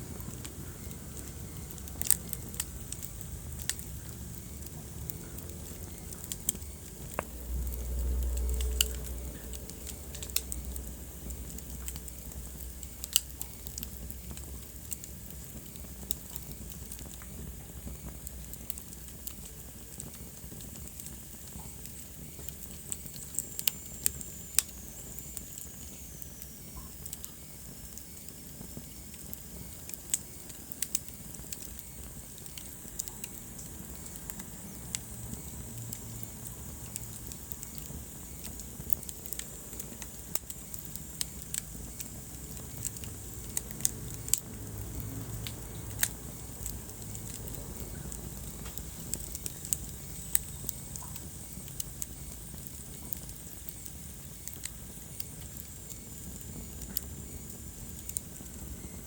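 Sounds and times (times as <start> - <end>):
low fire rumble: 0.0 - 59.0
wood fire crackling: 0.0 - 59.0.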